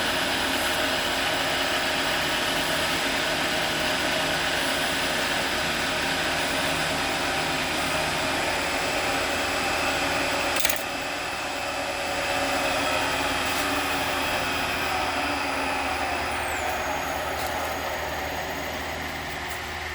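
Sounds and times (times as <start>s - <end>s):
wood lathe whirring: 0.0s - 19.9s.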